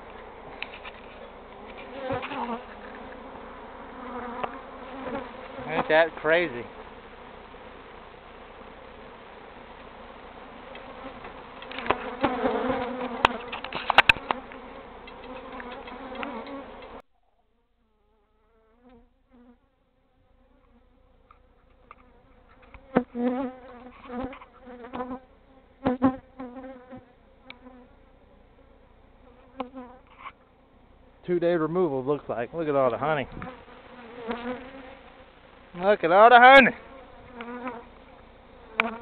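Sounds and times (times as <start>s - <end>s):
bees buzzing: 0.0s - 17.0s, 17.8s - 30.2s, 32.4s - 39.0s.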